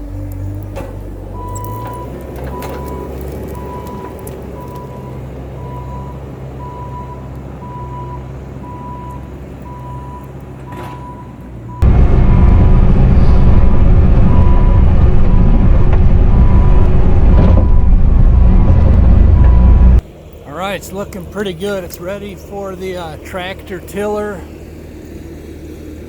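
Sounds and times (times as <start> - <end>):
diesel engine running: 0.0 - 26.0
reverse alarm beeping: 1.4 - 11.9, 12.5 - 20.0.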